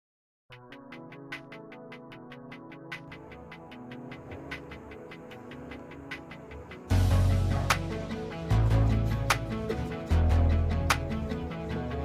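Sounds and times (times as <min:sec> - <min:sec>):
electronic sustained notes: 0:06.9 - 0:12.0.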